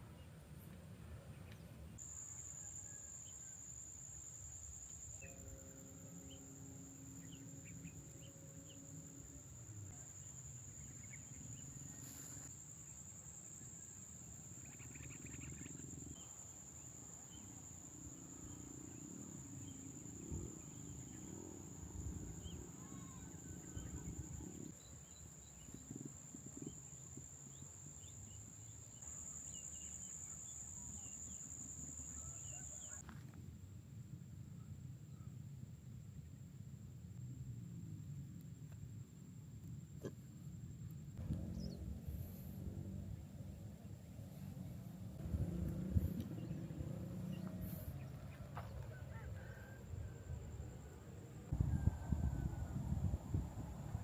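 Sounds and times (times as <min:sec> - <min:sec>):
high-pitched insect trill: 0:02.0 - 0:33.0
low rumble: 0:41.2 - 0:48.2.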